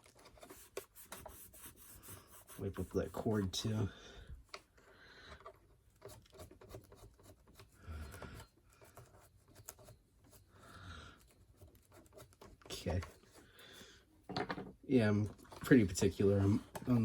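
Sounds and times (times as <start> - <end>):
cloth rubbing on cord: 0.0 - 3.8.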